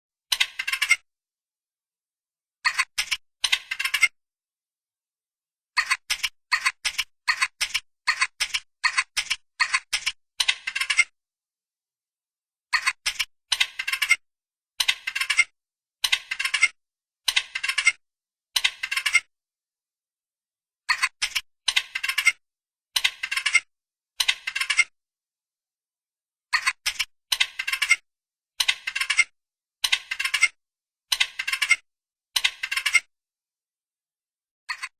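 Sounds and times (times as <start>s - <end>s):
squirrel chattering: 0.3s - 1.0s, 2.6s - 4.2s, 5.8s - 11.1s, 12.7s - 14.2s, 14.8s - 18.0s, 18.6s - 19.3s, 20.9s - 22.4s, 23.0s - 24.9s, 26.5s - 28.0s, 28.6s - 31.8s, 32.4s - 33.1s.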